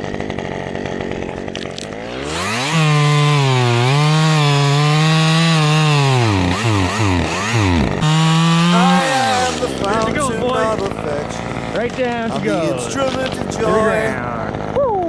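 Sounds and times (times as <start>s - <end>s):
chainsaw engine revving: 0.0s - 15.0s.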